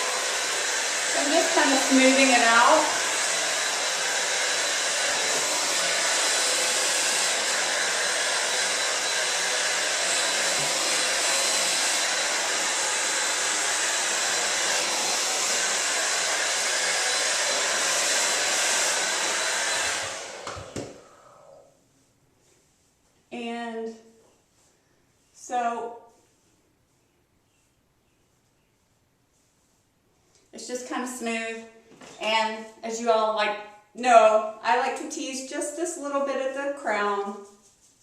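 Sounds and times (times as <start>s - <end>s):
hair dryer blowing with faint whine: 0.0s - 24.7s, 30.4s - 37.5s.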